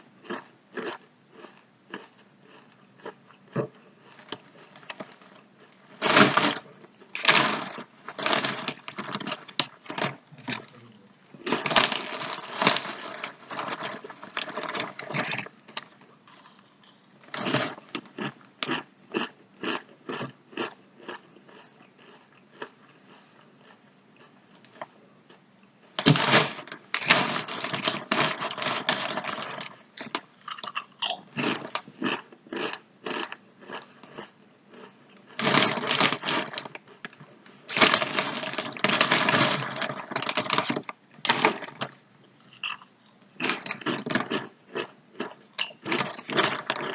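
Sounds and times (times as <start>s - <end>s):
person chewing crunchy chips: 0.0s - 46.9s.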